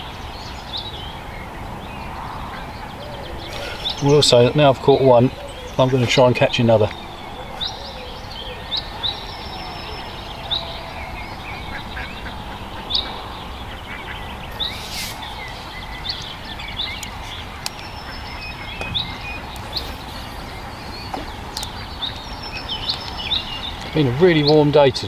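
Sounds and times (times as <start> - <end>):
songbirds chirping: 0.0 - 25.0
outdoor hiss: 3.4 - 7.0, 14.4 - 25.0
brief rustling: 14.5 - 16.3.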